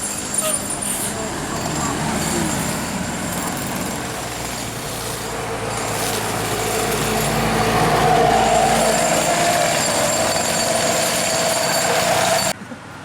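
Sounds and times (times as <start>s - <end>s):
bus diesel engine running: 0.0s - 12.6s.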